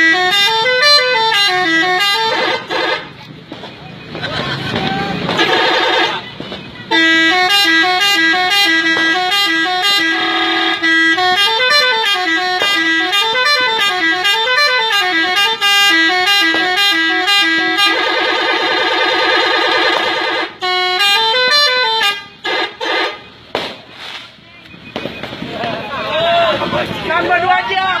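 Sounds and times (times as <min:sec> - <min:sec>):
electronic horn melody notes: 0:00.0 - 0:03.1, 0:06.9 - 0:23.3
siren-like wails: 0:17.8 - 0:20.6.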